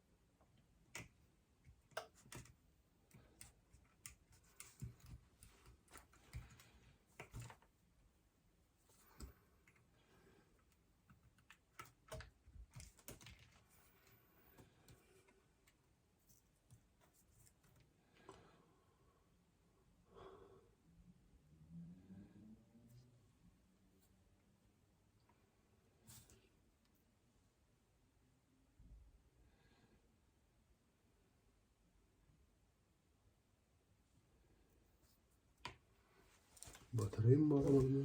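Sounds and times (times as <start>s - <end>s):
small clicks and taps of tools: 0.9s - 7.7s.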